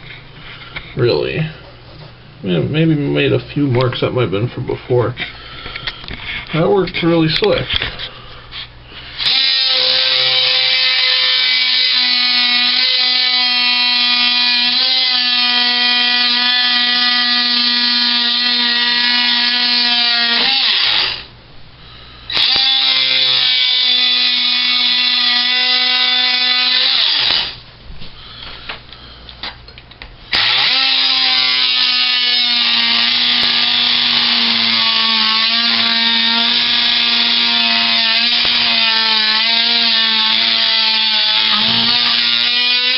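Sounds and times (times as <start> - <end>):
oscillating multi-tool buzzing: 9.2 - 21.3, 22.3 - 27.6, 30.3 - 42.9.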